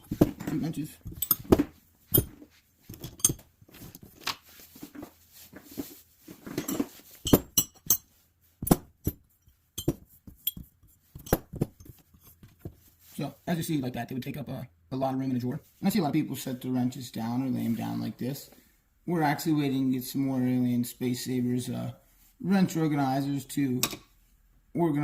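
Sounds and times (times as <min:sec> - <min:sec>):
metal wrenches clinking: 0:00.0 - 0:03.5, 0:06.5 - 0:09.2, 0:09.8 - 0:12.4
handling noise: 0:00.0 - 0:08.0.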